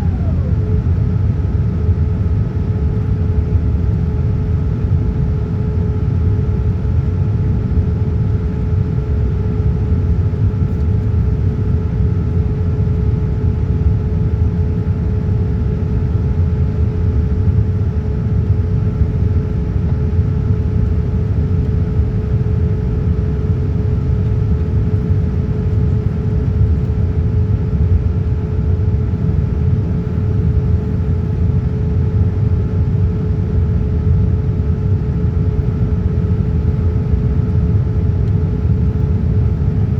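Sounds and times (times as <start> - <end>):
steady hums: 0.0 - 2.5
jet engine and airflow rumble: 0.0 - 39.9.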